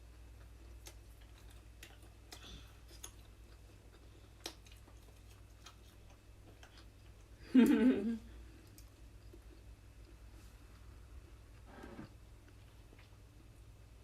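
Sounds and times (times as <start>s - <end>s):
small clicks of eating: 0.0s - 7.4s, 8.6s - 10.2s
low steady hum: 0.0s - 14.0s.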